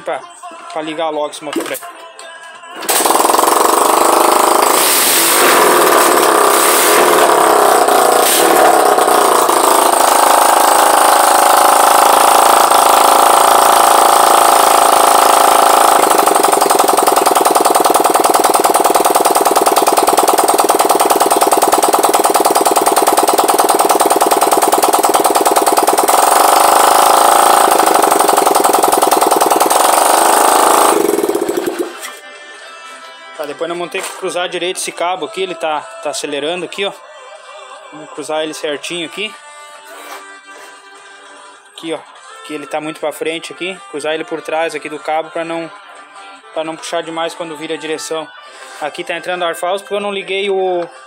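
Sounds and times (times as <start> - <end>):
motorcycle engine running without exhaust: 2.9 - 32.1.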